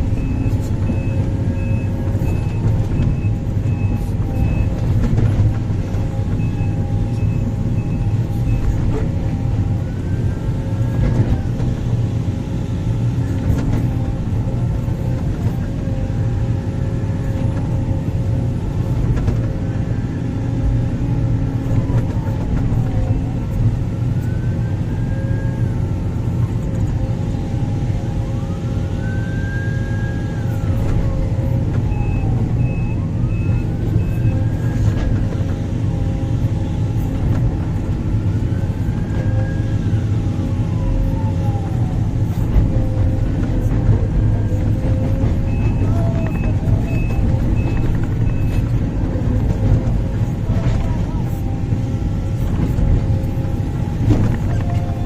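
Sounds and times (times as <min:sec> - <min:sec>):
diesel engine drone: 0:00.0 - 0:55.0.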